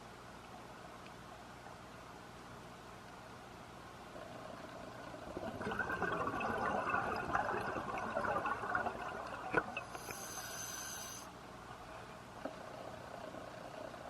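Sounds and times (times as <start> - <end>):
exhaled bubbles from regulator: 4.2 - 11.2
regulator inhalation hiss: 9.8 - 11.3.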